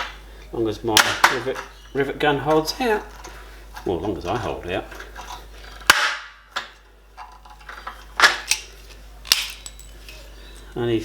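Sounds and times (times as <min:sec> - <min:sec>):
rivet mandrels snapping: 0:09.3 - 0:10.2.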